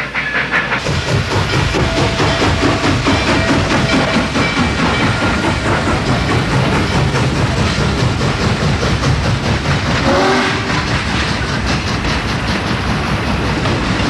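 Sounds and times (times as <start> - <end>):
train clattering on track: 0.0 - 14.0
train whistle toot: 10.0 - 10.7.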